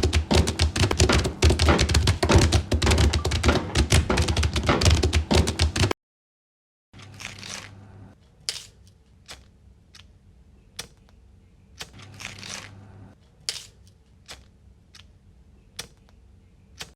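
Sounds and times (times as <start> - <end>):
low electrical hum: 7.0 - 16.8.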